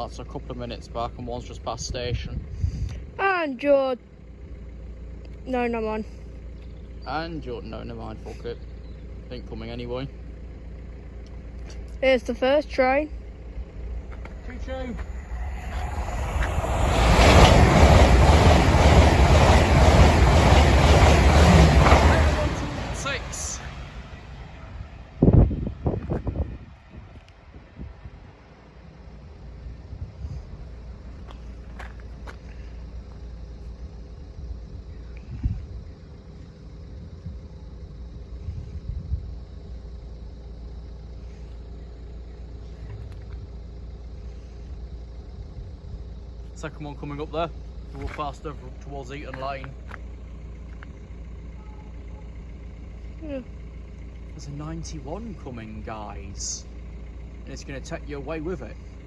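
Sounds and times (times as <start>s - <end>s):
vehicle engine rumbling: 0.0s - 59.0s
wheels clacking on rails: 12.6s - 25.2s
train passing at speed: 13.2s - 31.2s.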